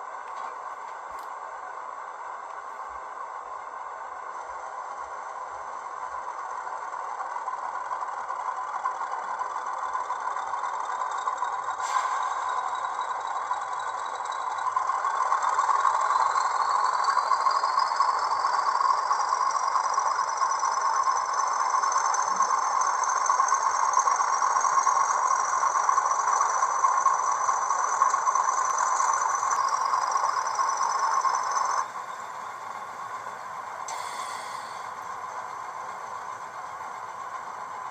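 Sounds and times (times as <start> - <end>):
click: 0.2 - 1.4
model diesel engine sound: 6.6 - 37.9
high whines rising in pitch: 25.4 - 37.9.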